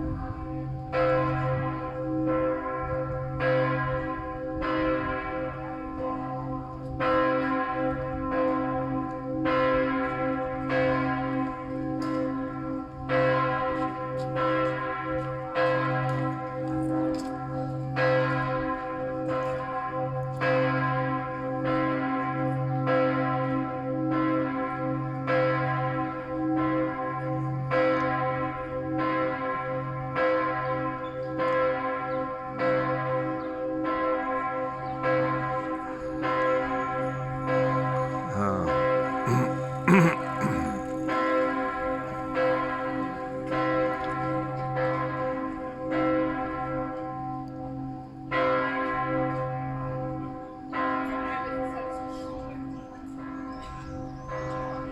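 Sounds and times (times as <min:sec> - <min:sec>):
church bells ringing: 0:00.3 - 0:38.1, 0:42.3 - 0:51.9.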